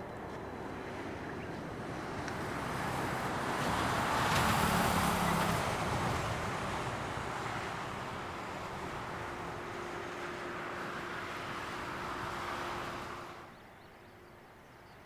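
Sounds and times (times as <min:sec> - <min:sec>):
vehicle passing by: 0:01.9 - 0:13.5.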